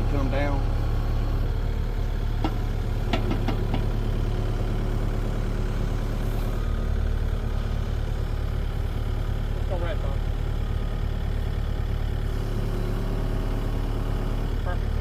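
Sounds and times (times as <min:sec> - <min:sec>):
diesel truck engine idling: 0:00.0 - 0:15.0
sharp metallic knocks: 0:02.4 - 0:04.0.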